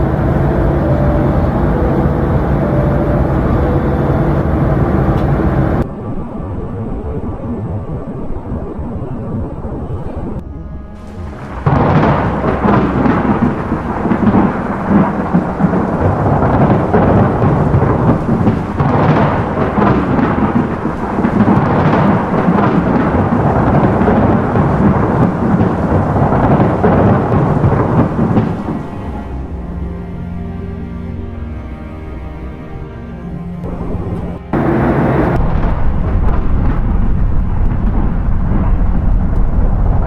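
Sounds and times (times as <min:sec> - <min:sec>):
rumbling thunder: 0:00.0 - 0:30.4, 0:33.6 - 0:40.0
rain: 0:00.0 - 0:32.7, 0:33.4 - 0:40.0
loud thunderclap: 0:11.0 - 0:29.2, 0:33.7 - 0:40.0.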